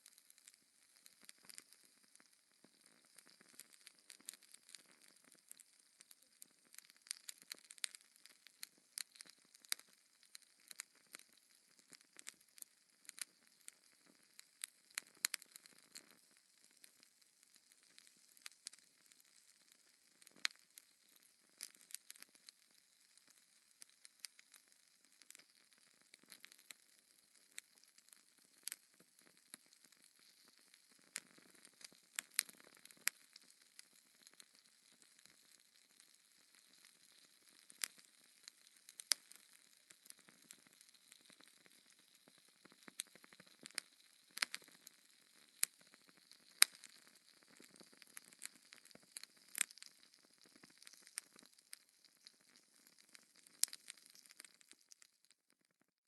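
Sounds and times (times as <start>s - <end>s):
wood fire crackling: 14.7s - 16.0s, 25.2s - 25.5s, 31.0s - 33.2s, 36.5s - 55.0s.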